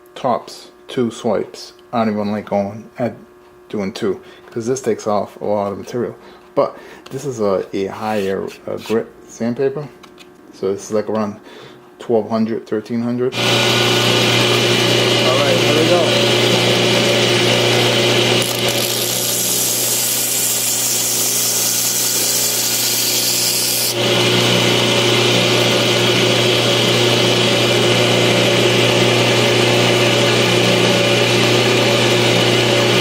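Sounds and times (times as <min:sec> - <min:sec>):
belt grinder hissing: 0:13.4 - 0:25.0.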